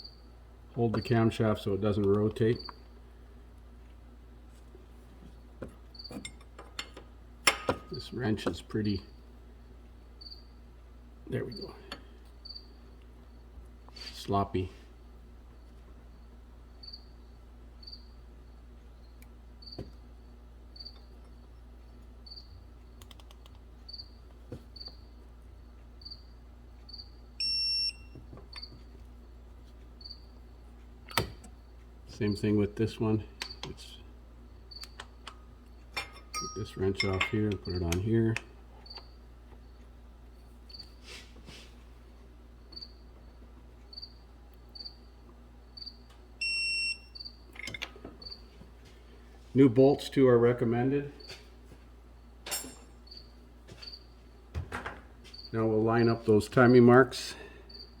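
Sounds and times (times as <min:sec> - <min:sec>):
cricket chirping: 0:10.2 - 0:10.6, 0:12.4 - 0:13.4, 0:15.6 - 0:19.8, 0:20.8 - 0:21.1, 0:22.2 - 0:22.5, 0:23.9 - 0:24.2, 0:24.8 - 0:27.9, 0:30.0 - 0:30.4, 0:42.7 - 0:47.4, 0:53.0 - 0:54.1, 0:55.3 - 0:55.6, 0:57.7 - 0:58.0.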